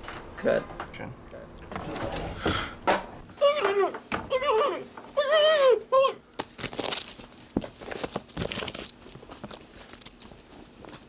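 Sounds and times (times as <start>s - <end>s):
crinkling and rustling: 6.4s - 11.0s.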